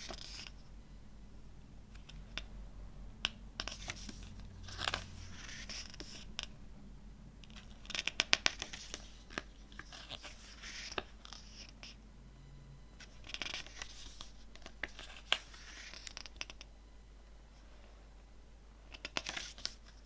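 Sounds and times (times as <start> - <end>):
plastic and card rustling: 0.0 - 0.6, 3.6 - 6.5, 7.4 - 12.0, 13.0 - 16.6, 18.9 - 20.0.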